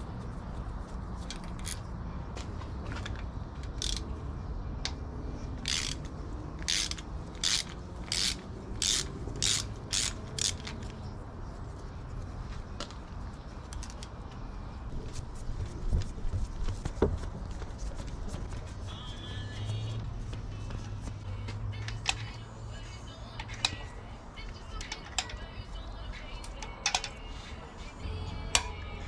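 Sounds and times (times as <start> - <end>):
ratchet wrench clicking: 1.2 - 1.8, 3.6 - 4.2, 5.6 - 11.0, 23.3 - 23.9, 24.7 - 25.5, 26.4 - 27.3, 28.4 - 28.9
tool clicks: 3.0 - 4.1, 5.6 - 11.0, 28.5 - 28.8.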